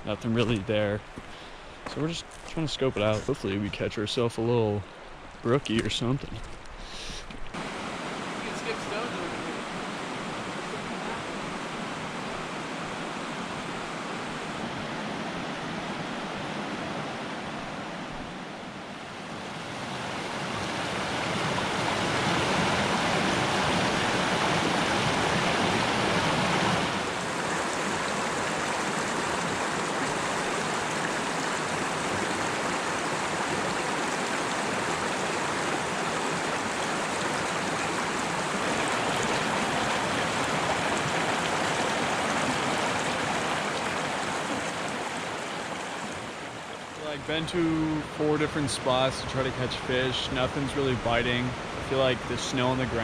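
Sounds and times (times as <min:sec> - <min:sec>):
stream rushing over rocks: 0:01.9 - 0:53.0.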